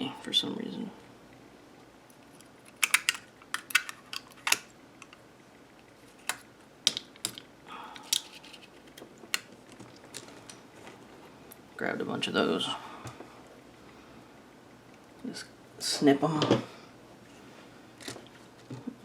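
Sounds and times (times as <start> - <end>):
small tools clicking and tapping: 2.4 - 5.2.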